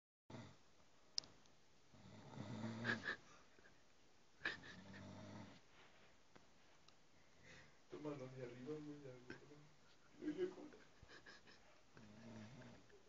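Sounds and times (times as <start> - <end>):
faint snoring: 0.3 - 0.6, 1.9 - 3.2, 4.5 - 5.6, 12.0 - 12.9.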